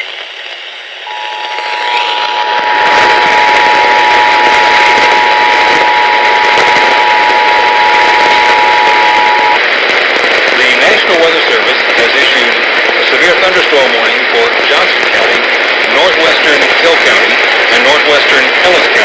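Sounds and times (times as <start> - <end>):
radio reception hiss: 0.0 - 19.0
two-tone alert signal: 1.1 - 9.6.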